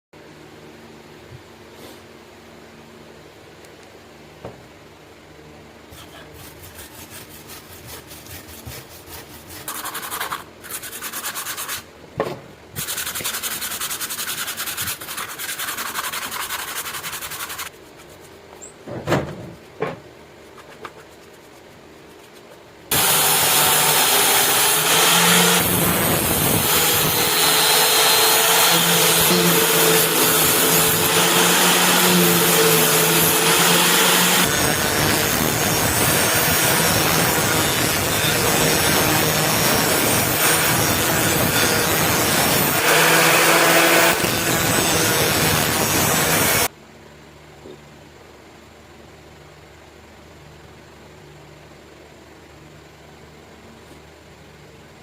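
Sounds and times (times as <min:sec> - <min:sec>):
knife blade being scraped by hand: 0:05.9 - 0:11.9, 0:12.8 - 0:18.7
power tool humming: 0:22.9 - 0:46.7.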